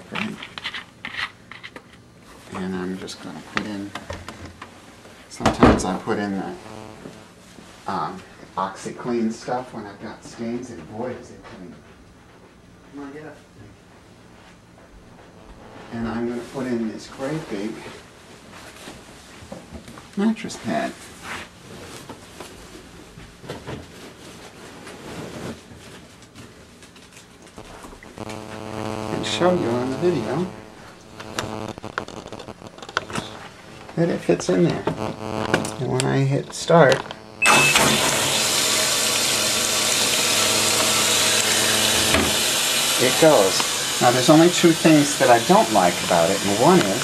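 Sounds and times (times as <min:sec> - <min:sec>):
water rushing into washing machine: 0:37.5 - 0:46.6.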